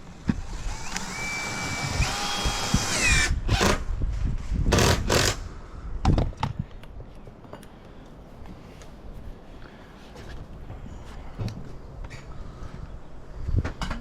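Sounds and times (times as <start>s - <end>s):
cordless drill driving a screw: 0.5s - 3.8s, 4.8s - 5.4s
short noisy bursts: 4.7s - 5.5s.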